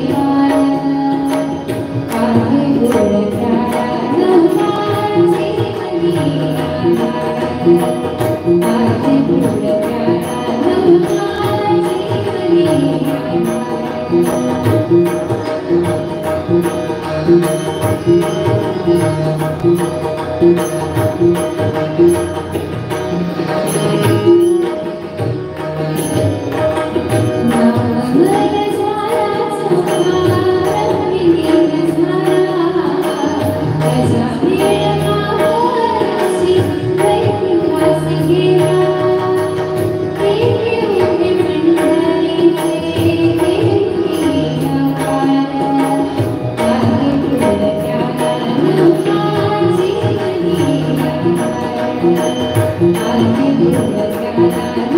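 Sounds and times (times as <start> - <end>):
rhythmic percussion: 0.0 - 54.9.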